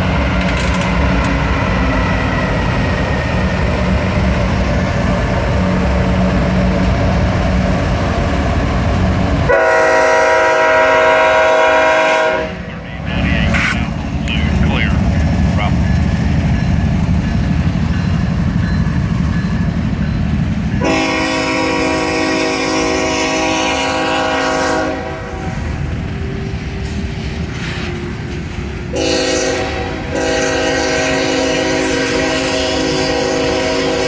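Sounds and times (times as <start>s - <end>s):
diesel locomotive rumble: 0.0s - 34.0s
locomotive air horn blast: 9.5s - 13.9s, 20.8s - 25.6s, 28.9s - 34.0s.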